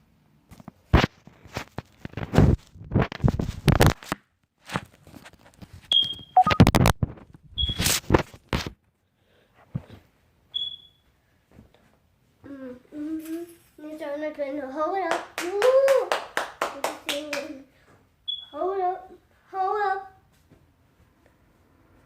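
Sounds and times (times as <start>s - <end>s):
short high beeps: 5.9s - 6.8s, 10.6s - 11.0s
child singing: 18.6s - 20.2s.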